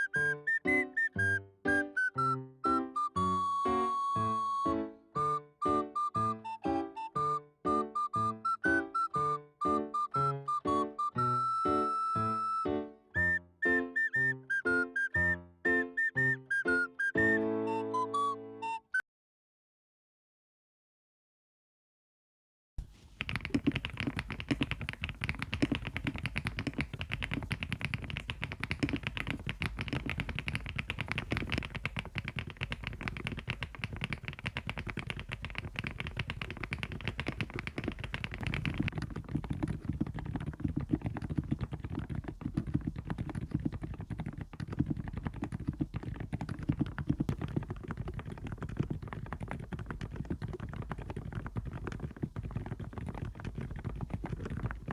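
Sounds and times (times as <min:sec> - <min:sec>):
fast typing key clacks: 0:22.8 - 0:54.9.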